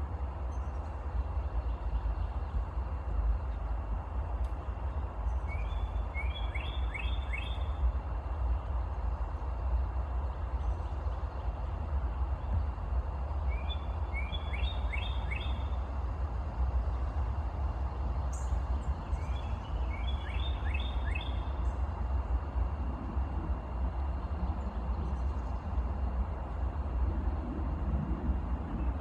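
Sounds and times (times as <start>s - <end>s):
steady low rumble: 0.0s - 29.0s
songbird chirping: 18.3s - 21.8s.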